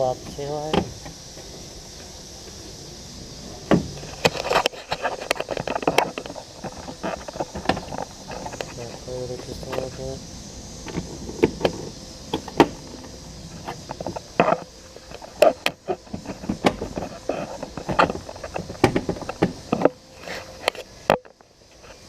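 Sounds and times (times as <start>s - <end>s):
plastic knocks and rattles: 15.5s - 20.0s.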